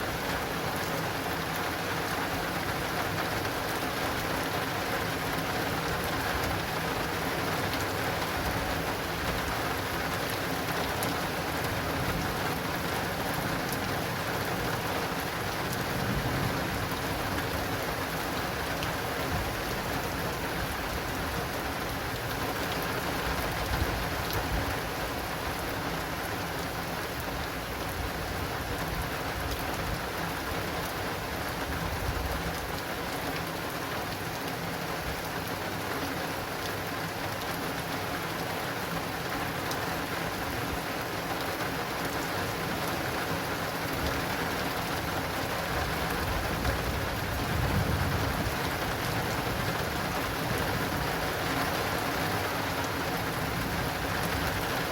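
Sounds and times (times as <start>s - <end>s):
heavy rain on awning: 0.0s - 54.9s
thunder rumbling: 46.8s - 48.7s.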